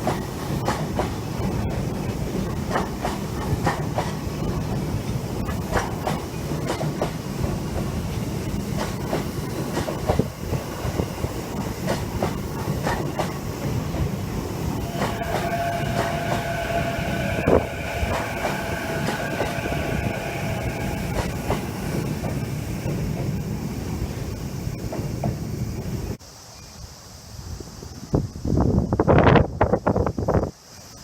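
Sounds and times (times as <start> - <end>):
train wheels clacking over rail joints: 0.0 - 26.0
train rumble: 0.0 - 26.2
steady high-pitched tones: 10.7 - 26.0.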